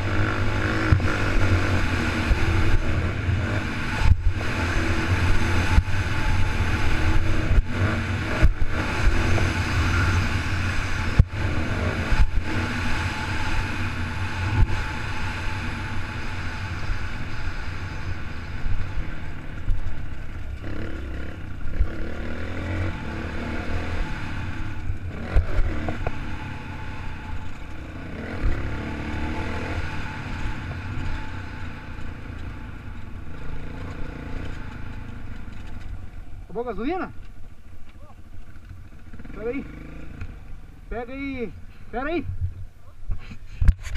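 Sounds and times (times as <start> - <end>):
dirt bike engine revving: 0.0 - 37.1, 38.8 - 41.6
wind noise on microphone: 42.2 - 43.9.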